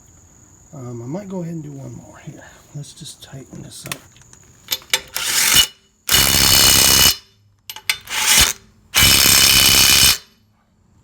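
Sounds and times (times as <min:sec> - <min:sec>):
impact wrench bursts: 0:04.7 - 0:10.3.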